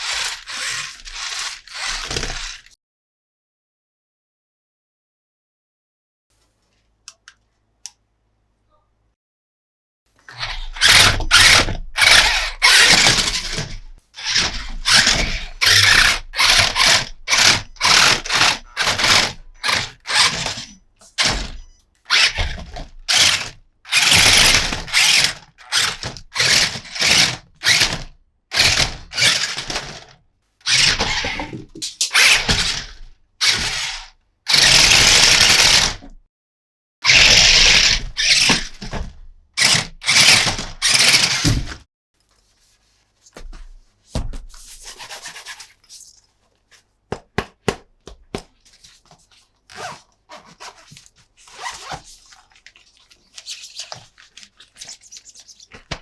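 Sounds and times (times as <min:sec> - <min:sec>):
plastic toy parts rattling: 0:00.0 - 0:02.7, 0:10.3 - 0:21.4.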